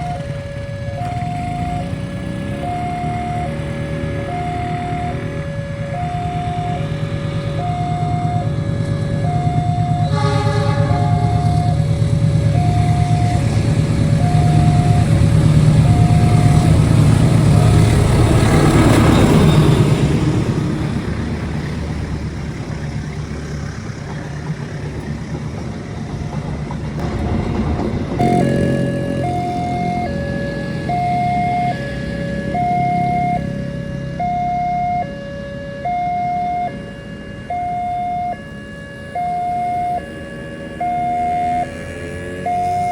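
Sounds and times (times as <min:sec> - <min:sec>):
level crossing alarm: 0:00.0 - 0:22.0, 0:28.2 - 0:42.9
train rumble: 0:00.0 - 0:34.4
train horn: 0:10.0 - 0:11.9.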